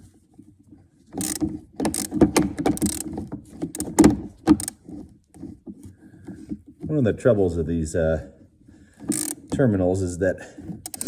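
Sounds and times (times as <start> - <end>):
wrench metal clicks and rattles: 1.2 - 4.8, 9.1 - 9.5.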